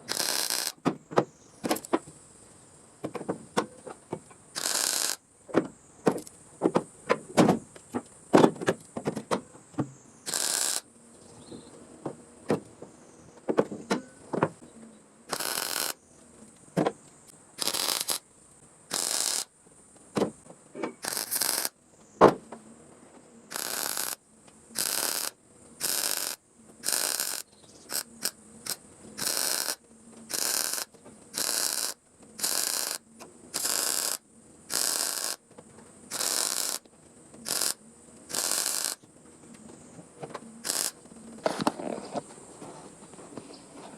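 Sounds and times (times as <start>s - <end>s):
welding hissing and crackling: 0.0s - 0.8s, 4.5s - 5.2s, 10.3s - 10.9s, 15.3s - 16.0s, 17.6s - 18.2s, 18.9s - 19.5s, 21.0s - 21.8s, 23.5s - 35.5s, 36.1s - 39.1s, 40.6s - 41.6s.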